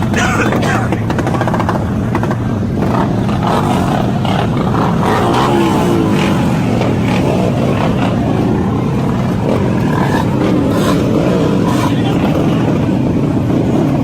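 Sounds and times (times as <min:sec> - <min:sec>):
motorbike engines revving: 0:00.0 - 0:14.0.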